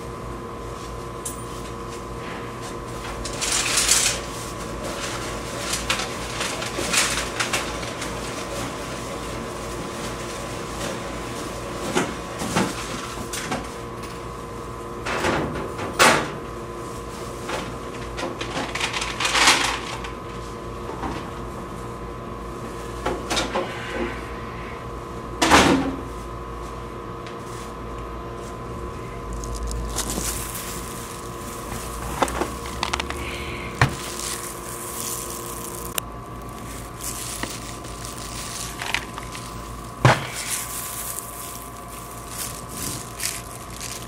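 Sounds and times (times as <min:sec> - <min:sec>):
machine electrical hum: 0:00.0 - 0:44.0.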